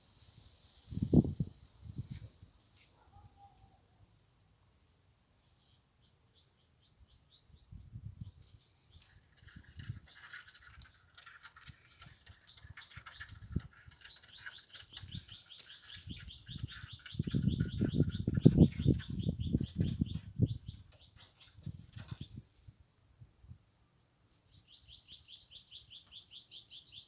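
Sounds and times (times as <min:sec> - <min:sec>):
small birds chirping: 0:05.4 - 0:23.0, 0:23.6 - 0:27.0.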